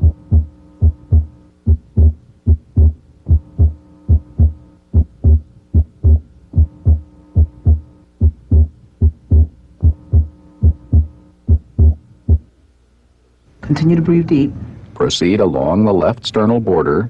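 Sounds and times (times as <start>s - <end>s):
heartbeat through stethoscope: 0.0s - 12.5s
faint steady hum: 0.0s - 17.0s.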